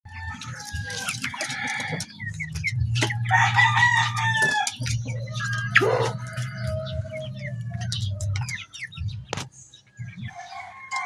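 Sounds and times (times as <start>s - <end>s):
chicks peeping and chirping: 0.1s - 11.0s
harsh chicken call: 3.2s - 8.1s.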